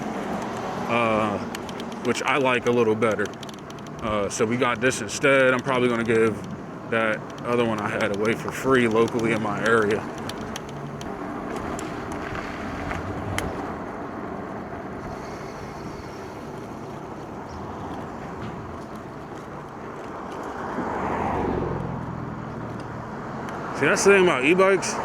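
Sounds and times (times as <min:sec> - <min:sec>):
sharp clicks: 0:00.0 - 0:13.6
passing vehicle: 0:00.0 - 0:25.0
road and wind noise: 0:00.0 - 0:25.0.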